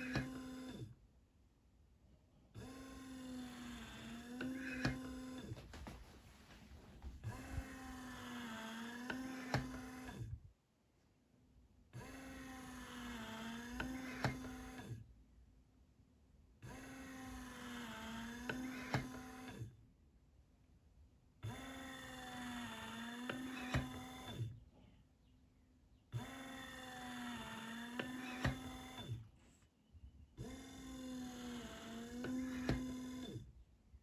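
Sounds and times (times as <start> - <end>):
small electric motor whining: 0.0 - 0.9, 2.6 - 5.6, 7.1 - 10.4, 12.0 - 15.0, 16.6 - 19.7, 21.4 - 24.6, 26.2 - 29.3, 30.4 - 33.5
sharp mechanical clicks: 26.2 - 29.1, 30.5 - 33.4.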